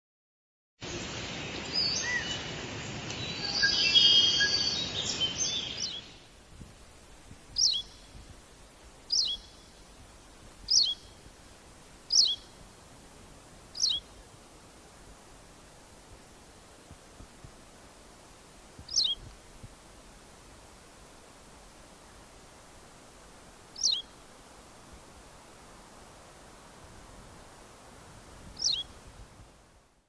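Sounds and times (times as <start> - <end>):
busy bird song: 3.1 - 6.2, 7.5 - 8.2, 9.1 - 9.9, 10.6 - 11.3, 12.1 - 12.6, 13.8 - 14.1, 18.9 - 19.3, 23.8 - 24.2, 28.6 - 28.9.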